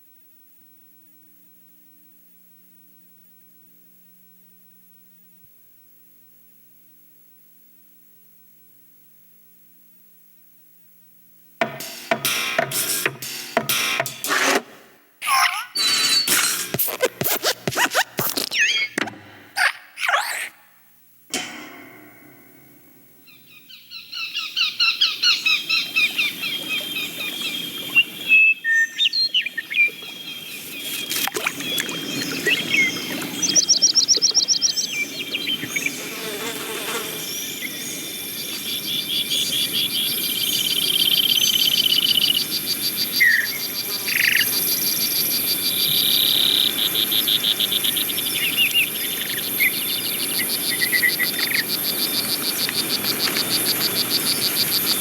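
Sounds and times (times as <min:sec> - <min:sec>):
steady hiss: 0:11.6 - 0:15.2, 0:21.0 - 0:55.0
insect trills: 0:15.3 - 0:19.0, 0:23.1 - 0:55.0
sharp click: 0:21.3 - 0:23.0
cricket-like chirping: 0:21.4 - 0:55.0.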